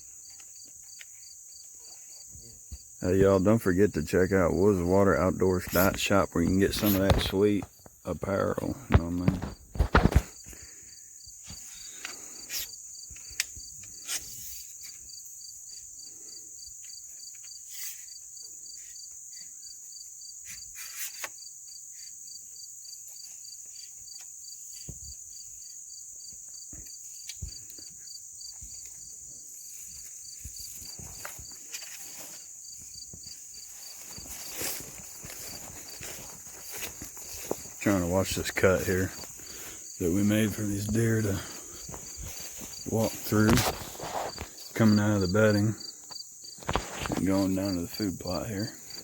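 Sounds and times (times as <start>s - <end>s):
insects calling: 0.0s - 49.0s
faint rustles and clicks: 28.7s - 45.6s.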